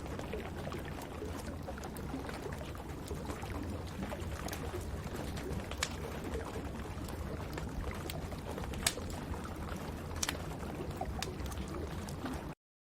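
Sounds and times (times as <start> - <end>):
wood fire crackling and popping: 0.3 - 12.3
rain falling: 4.0 - 12.2.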